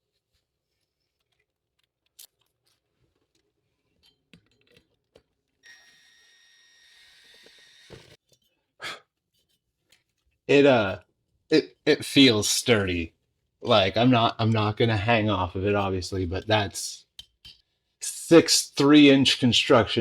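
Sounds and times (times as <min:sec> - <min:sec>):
power drill whirring: 0:05.6 - 0:08.2.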